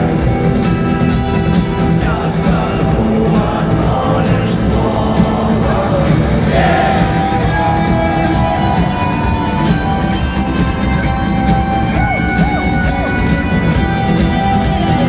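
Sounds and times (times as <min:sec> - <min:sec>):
person singing: 0:00.0 - 0:09.8
bass guitar: 0:00.0 - 0:15.0
drums: 0:00.0 - 0:15.0
electric guitars: 0:00.0 - 0:15.0.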